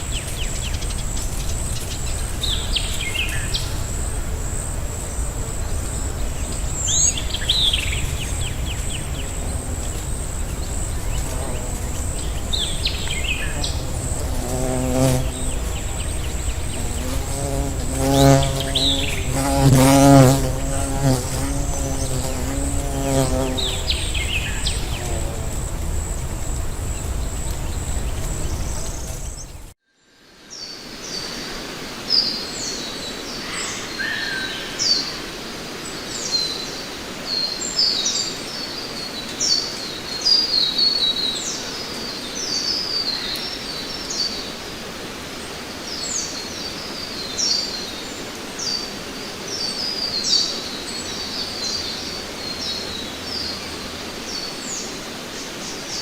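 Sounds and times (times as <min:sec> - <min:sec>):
low rumble: 0:00.0 - 0:14.6, 0:23.5 - 0:29.7
birds chirping: 0:00.0 - 0:29.7
high insect drone: 0:00.0 - 0:29.8
steady hiss: 0:00.0 - 0:56.0.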